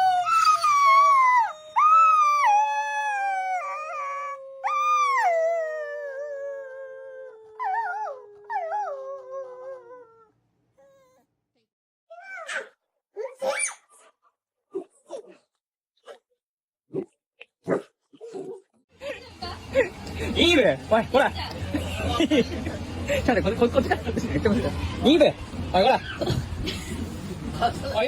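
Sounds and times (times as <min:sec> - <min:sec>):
dog howling: 0:00.0 - 0:10.3.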